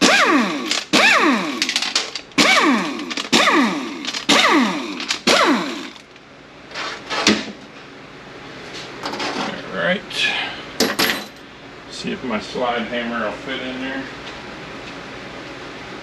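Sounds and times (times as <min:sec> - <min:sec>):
power tool whirring in short bursts: 0:00.0 - 0:01.8, 0:02.4 - 0:06.0.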